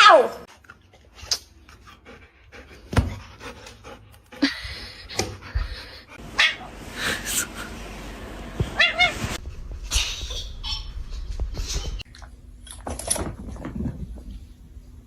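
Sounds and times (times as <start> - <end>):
dog panting: 1.7 - 6.2.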